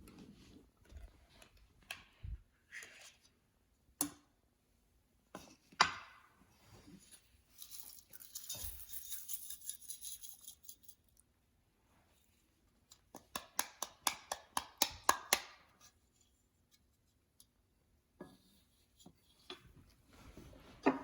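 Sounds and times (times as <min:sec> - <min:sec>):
clicks and taps: 0:12.9 - 0:15.7.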